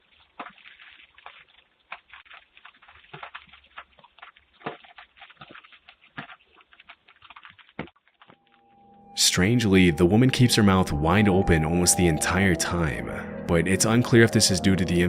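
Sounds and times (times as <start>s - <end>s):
raindrops tapping: 0.0s - 8.5s.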